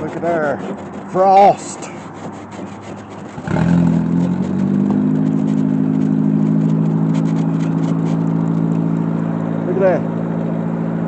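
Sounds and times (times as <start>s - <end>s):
car engine starting and idling: 3.4s - 11.0s.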